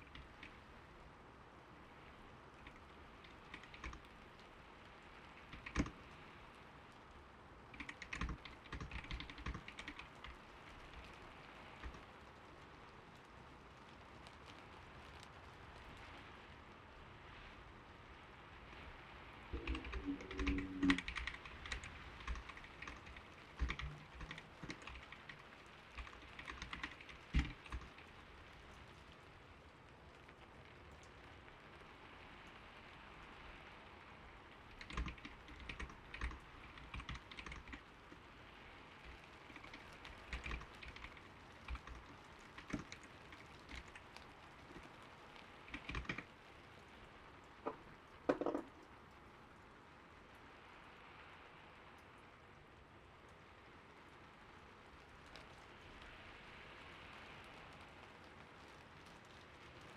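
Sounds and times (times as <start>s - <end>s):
gentle rain: 0.0s - 59.9s
typing on mechanical keyboard: 2.6s - 4.1s, 5.4s - 6.0s, 7.7s - 10.4s, 19.6s - 28.1s, 34.8s - 37.8s, 39.4s - 44.9s, 45.6s - 46.3s.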